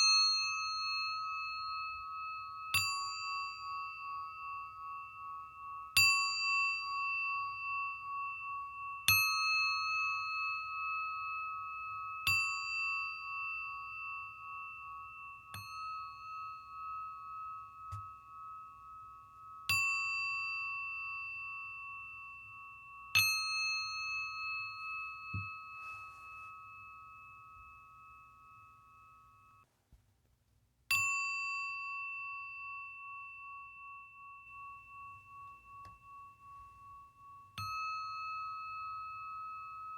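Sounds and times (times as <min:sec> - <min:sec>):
singing bowl ringing: 0:00.0 - 0:29.7, 0:30.9 - 0:39.9
soft taps on singing bowl: 0:17.9 - 0:18.2, 0:25.3 - 0:26.1.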